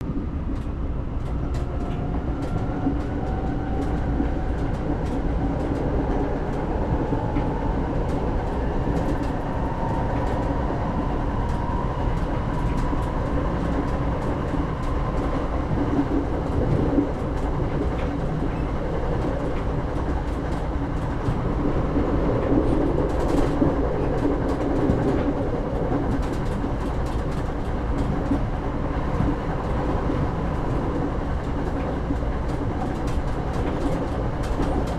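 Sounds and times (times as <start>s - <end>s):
train carriage rumble: 0.0s - 34.9s.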